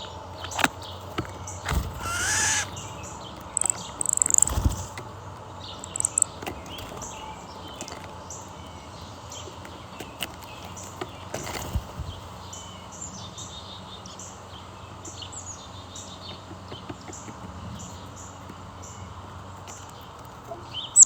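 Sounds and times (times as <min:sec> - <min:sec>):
wild birds calling: 0:00.0 - 0:21.0
high bird chirps: 0:02.0 - 0:04.7, 0:05.8 - 0:06.4
scattered clicks: 0:03.4 - 0:05.1, 0:05.8 - 0:07.0.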